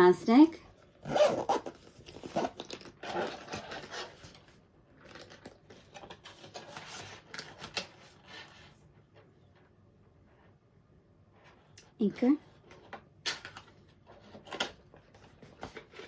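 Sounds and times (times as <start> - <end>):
zip case and packaging handled: 0.7 - 8.8, 12.6 - 16.0.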